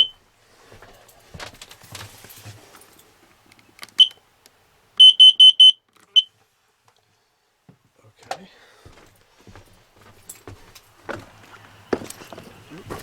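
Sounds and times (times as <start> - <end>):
carbon monoxide alarm beeping: 0.0 - 0.2, 5.0 - 6.3
rustling: 0.0 - 4.0.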